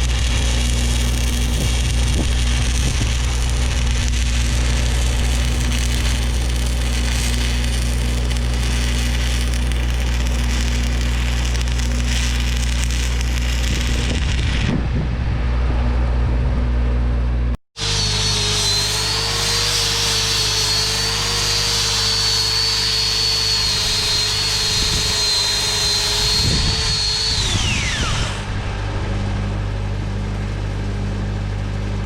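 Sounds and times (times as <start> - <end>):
welding arc crackling: 0.0 - 14.8, 17.8 - 28.5
continuous electrical hum: 0.0 - 17.6, 23.2 - 32.0.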